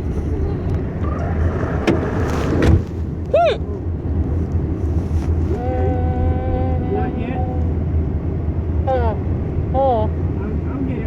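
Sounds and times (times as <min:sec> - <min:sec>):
car road rumble: 0:00.0 - 0:11.0
high voiced hiccup: 0:03.3 - 0:03.7.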